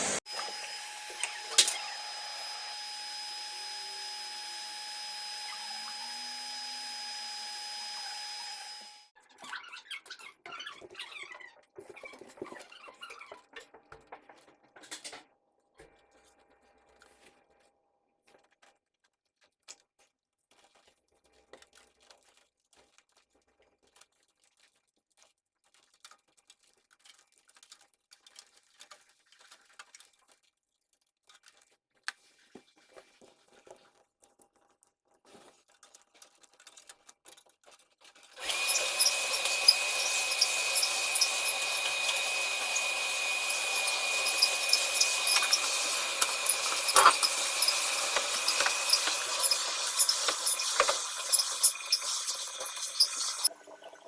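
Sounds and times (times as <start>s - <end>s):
power tool whining: 0.0s - 9.1s, 38.4s - 53.5s.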